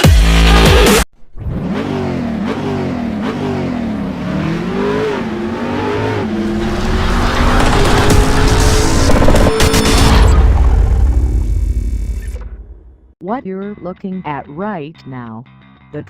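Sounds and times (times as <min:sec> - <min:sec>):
loud electronic music: 0:00.0 - 0:01.0, 0:06.9 - 0:10.4
sports car engine revving: 0:01.4 - 0:11.1.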